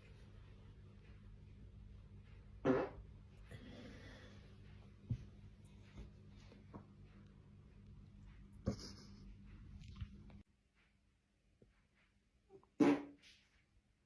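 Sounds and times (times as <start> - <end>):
buzzing fart: 2.6 - 3.1, 12.8 - 13.2.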